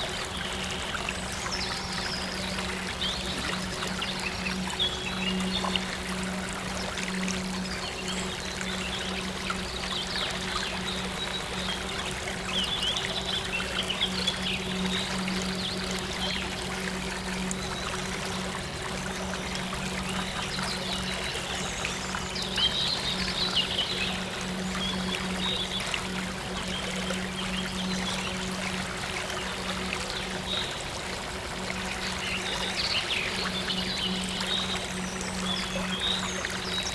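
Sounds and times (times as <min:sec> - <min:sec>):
stream water trickling: 0:00.0 - 0:36.9.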